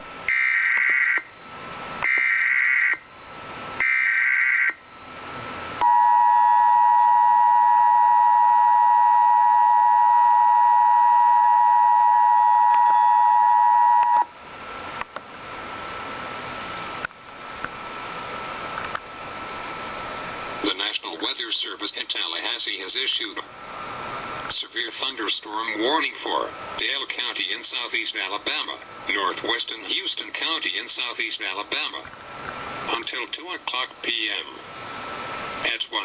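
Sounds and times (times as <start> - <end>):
loud dual-tone alert signal: 5.8 - 14.3.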